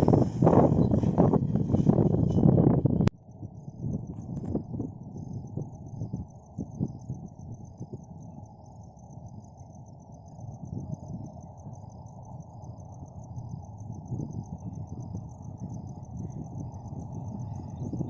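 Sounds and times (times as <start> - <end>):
low rumble: 0.0 - 8.7
crickets chirping: 0.0 - 18.0.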